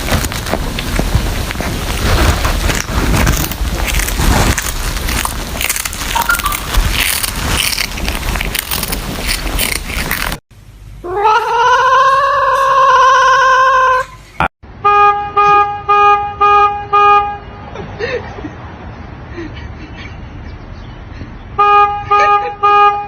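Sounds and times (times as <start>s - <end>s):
noisy rush with clicks: 0.0s - 10.4s.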